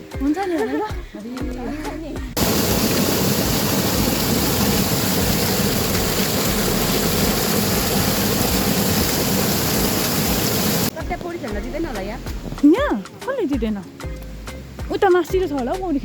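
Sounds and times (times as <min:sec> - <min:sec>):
fast-flowing stream rushing: 0:02.4 - 0:11.0.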